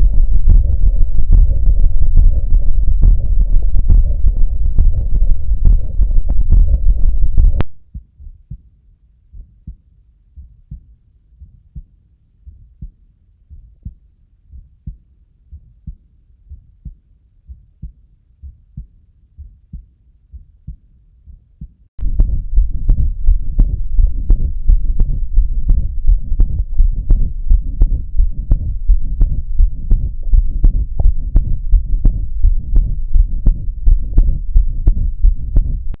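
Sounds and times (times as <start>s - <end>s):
heartbeats with murmur: 0.0s - 8.7s, 9.3s - 36.0s.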